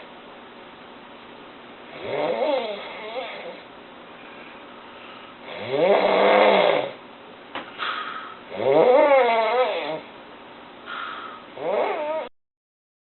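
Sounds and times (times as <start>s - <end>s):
loud snoring: 1.9s - 3.6s, 5.4s - 7.0s, 8.5s - 10.1s, 11.6s - 12.3s.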